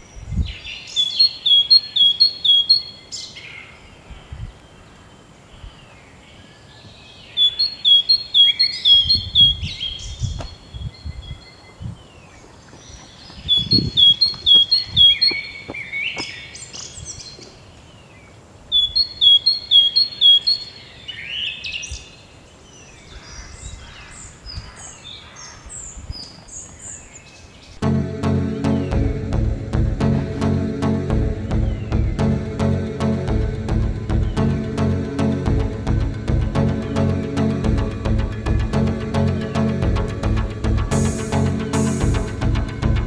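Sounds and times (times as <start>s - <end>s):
high chirps of other birds: 0.0s - 4.4s, 6.8s - 17.5s, 18.7s - 27.8s
songbird singing: 0.0s - 27.8s.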